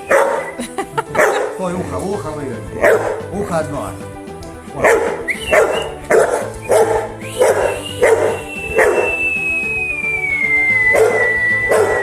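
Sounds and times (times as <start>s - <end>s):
dog barking: 0.0s - 1.6s, 2.8s - 3.3s, 4.8s - 9.2s, 10.8s - 12.0s
background music: 0.0s - 12.0s
person whistling a sliding note: 5.3s - 6.0s, 6.6s - 12.0s.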